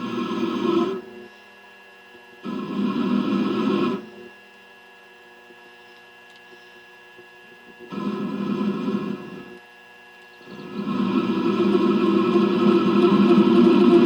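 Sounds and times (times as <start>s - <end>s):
metal lathe humming: 0.0s - 1.2s, 2.4s - 4.4s, 7.7s - 9.6s, 10.4s - 14.0s.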